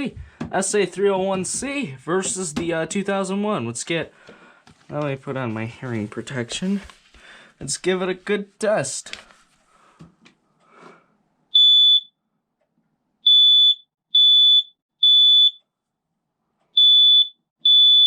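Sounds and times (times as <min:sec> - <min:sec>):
faint handling noises: 0:09.0 - 0:10.4
smoke alarm beeps: 0:11.5 - 0:12.2, 0:13.2 - 0:15.6, 0:16.8 - 0:18.0.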